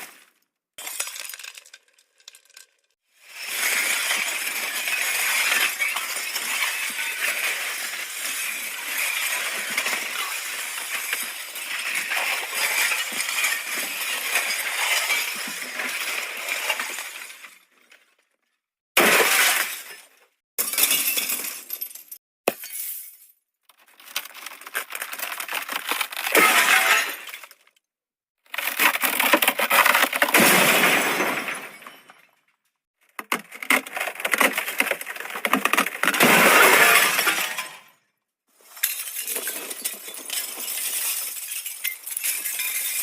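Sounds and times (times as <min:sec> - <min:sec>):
glass smashing: 0:00.8 - 0:02.6, 0:03.3 - 0:17.6, 0:19.0 - 0:23.3, 0:26.0 - 0:27.6, 0:29.7 - 0:32.4, 0:36.1 - 0:37.9, 0:38.6 - 0:43.0
broken glass clinking and crashing: 0:03.3 - 0:17.6, 0:19.0 - 0:23.4, 0:26.4 - 0:27.6, 0:30.3 - 0:32.4, 0:36.2 - 0:38.0, 0:38.6 - 0:43.0.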